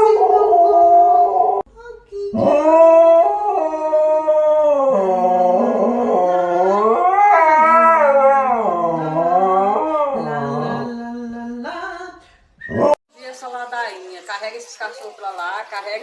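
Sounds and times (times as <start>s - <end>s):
dog howling: 0.0s - 1.6s, 2.4s - 11.6s, 12.7s - 13.0s.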